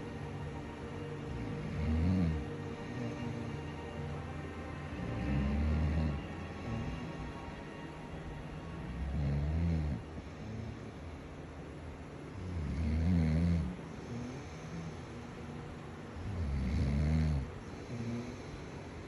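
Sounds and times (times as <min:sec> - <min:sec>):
person snoring: 0:01.2 - 0:03.9, 0:04.9 - 0:07.4, 0:08.9 - 0:11.0, 0:12.4 - 0:15.4, 0:16.2 - 0:18.7.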